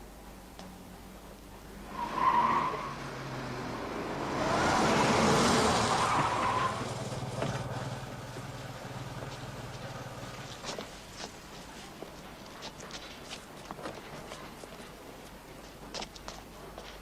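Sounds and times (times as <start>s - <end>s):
car rushing past: 1.8s - 10.6s
car tyres screeching: 1.8s - 10.8s
car engine running: 6.7s - 10.8s.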